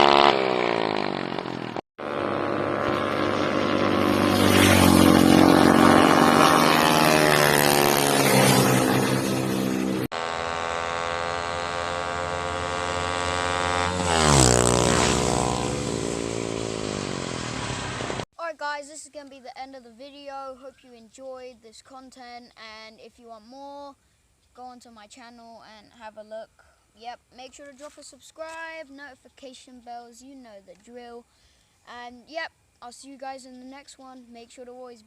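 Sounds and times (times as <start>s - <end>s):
motorbike engine running hard: 0.0s - 18.2s.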